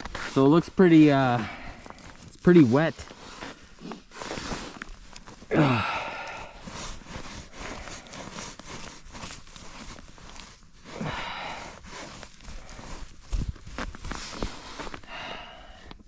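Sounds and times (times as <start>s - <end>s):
rustling and scraping snow and wood: 0.0s - 16.0s
man grunting: 5.5s - 6.4s.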